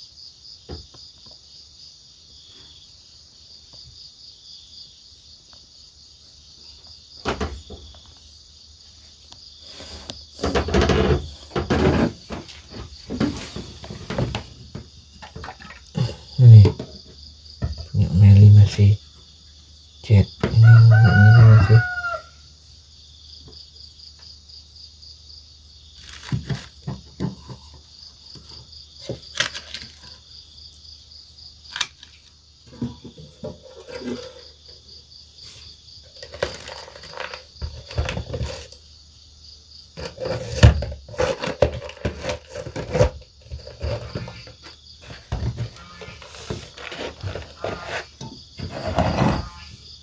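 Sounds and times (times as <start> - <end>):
insects chirping: 0.0 - 50.0
rustles clicks and knocks: 36.1 - 38.8.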